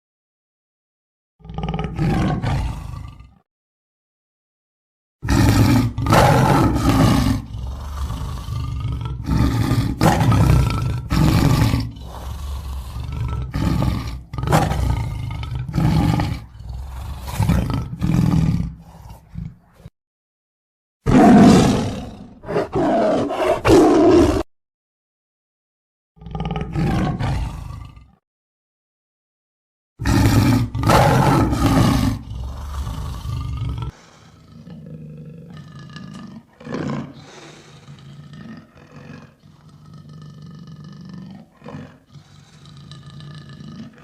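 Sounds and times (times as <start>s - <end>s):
lion roaring: 1.4s - 3.4s, 5.2s - 19.9s, 21.1s - 24.5s, 26.2s - 28.2s, 30.0s - 44.0s.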